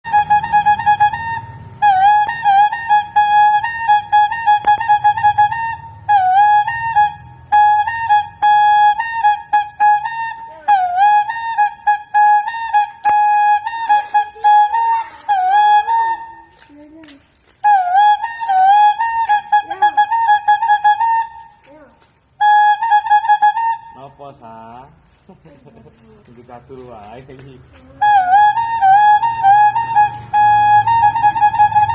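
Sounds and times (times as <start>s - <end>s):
horn playing fast tune: 0.1s - 16.4s, 17.7s - 21.5s, 28.0s - 31.9s.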